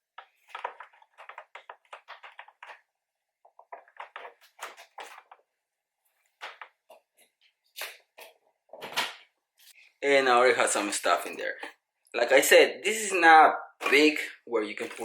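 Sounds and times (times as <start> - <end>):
handling clicks taps and rustles: 0.2 - 5.5.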